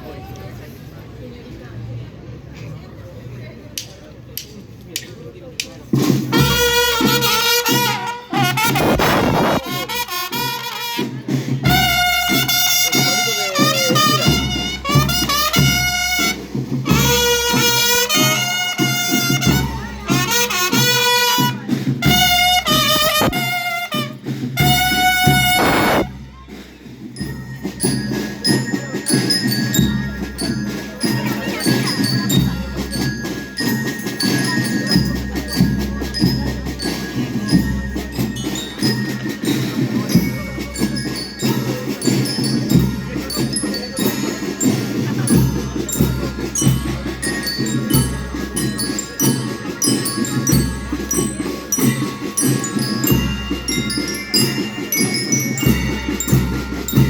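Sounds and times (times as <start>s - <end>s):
rapid snare drum strokes: 5.6s - 26.2s
bell lyres playing melody: 5.8s - 57.0s
steady bass drum beat: 24.6s - 26.1s.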